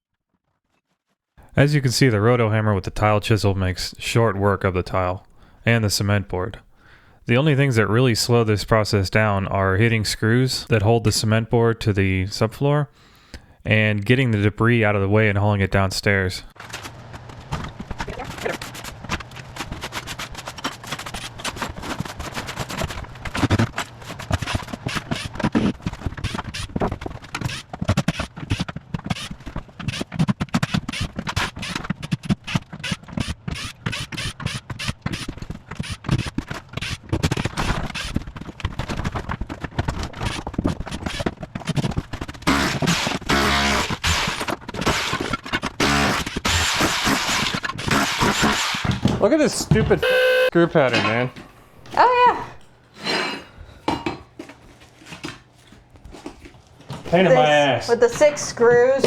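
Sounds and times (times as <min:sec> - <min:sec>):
rotary hammer breaking tile: 0:32.7 - 0:49.2.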